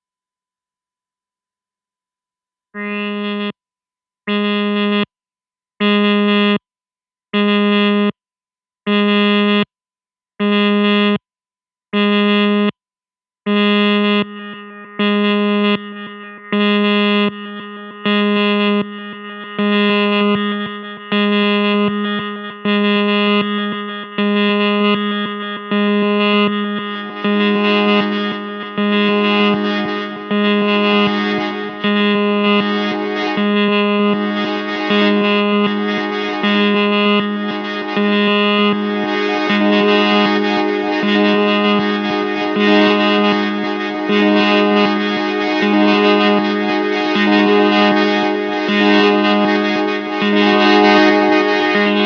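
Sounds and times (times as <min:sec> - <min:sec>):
synthesizer low note repeating: 0:13.6 - 0:52.0.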